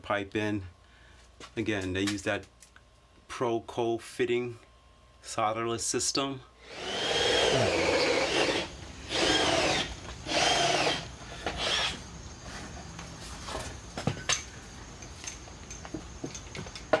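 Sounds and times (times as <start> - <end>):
power drill bursts: 6.6 - 12.1.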